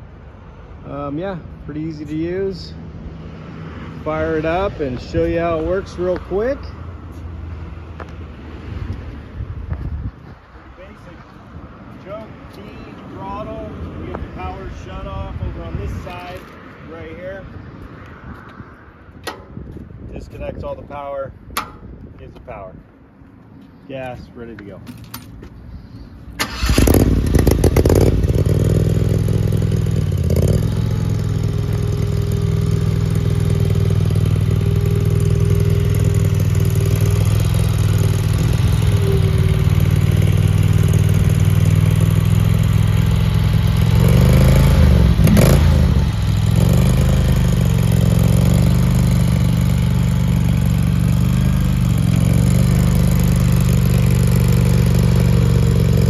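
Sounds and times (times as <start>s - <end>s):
gasoline engine starting and running: 26.2s - 56.0s.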